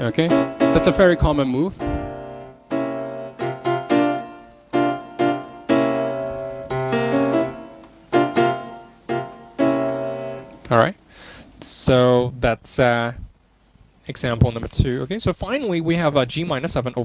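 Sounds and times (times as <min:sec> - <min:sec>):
piano chords on keyboard: 0:00.0 - 0:10.9.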